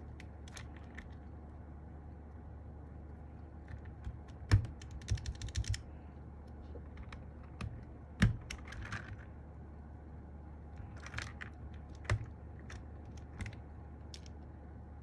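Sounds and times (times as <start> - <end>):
mechanical keyboard clacks: 3.7 - 5.8, 7.0 - 9.2, 11.0 - 14.3.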